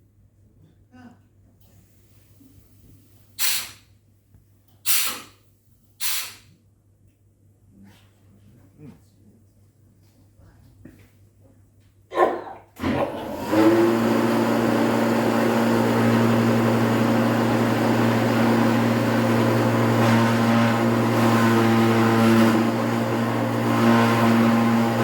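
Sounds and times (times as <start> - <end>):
machine motor humming: 12.8 - 25.0.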